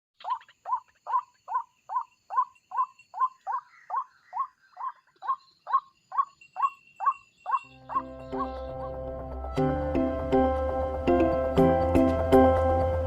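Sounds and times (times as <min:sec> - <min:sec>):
waterhen calling: 0:00.2 - 0:09.1.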